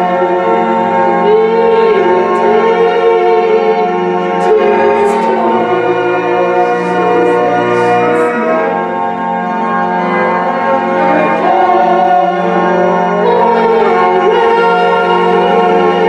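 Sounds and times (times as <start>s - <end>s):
slow music of held chords: 0.0s - 16.0s.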